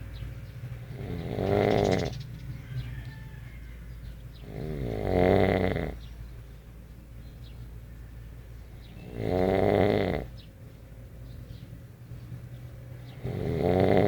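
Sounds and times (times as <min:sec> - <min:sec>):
person snoring: 0:04.5 - 0:06.0, 0:09.1 - 0:10.3, 0:13.2 - 0:14.0.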